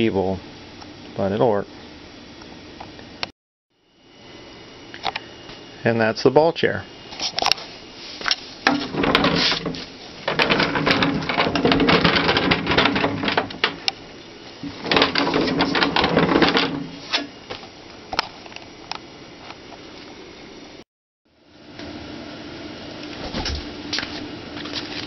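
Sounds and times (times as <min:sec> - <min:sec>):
chair casters rolling on hard floor: 0:08.7 - 0:13.9, 0:14.6 - 0:17.2.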